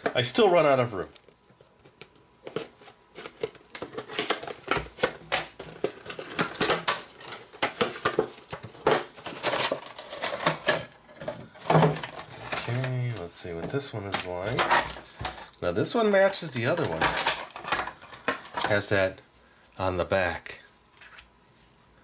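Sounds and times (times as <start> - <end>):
packaging clicks and rustles: 1.1 - 15.6, 16.4 - 19.1.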